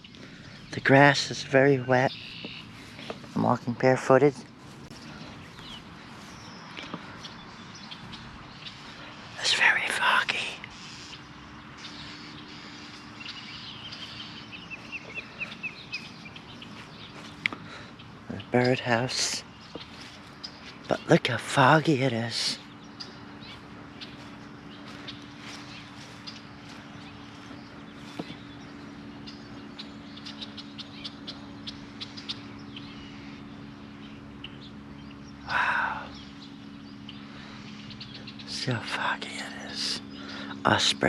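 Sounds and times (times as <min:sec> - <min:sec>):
bird chirping: 0:00.0 - 0:41.0.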